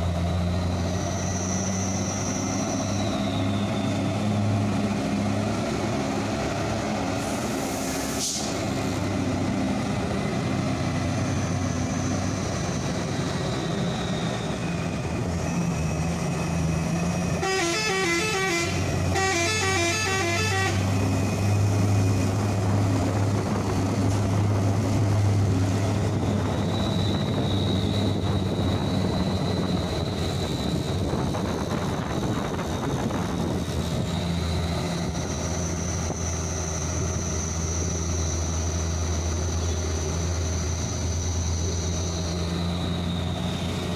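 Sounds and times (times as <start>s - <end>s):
diesel truck engines passing: 0.0s - 43.9s
musical truck horn: 17.3s - 21.1s.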